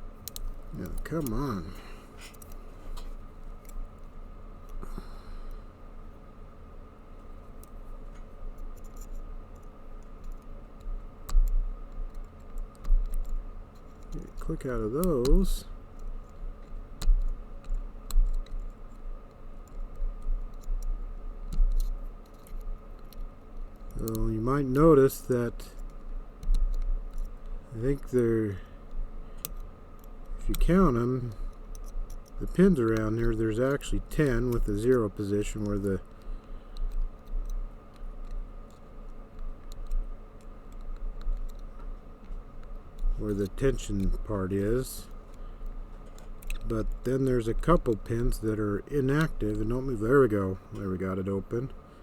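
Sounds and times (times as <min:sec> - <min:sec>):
low steady hum: 0:00.0 - 0:52.0
lock-picking metallic clicks: 0:46.0 - 0:48.4.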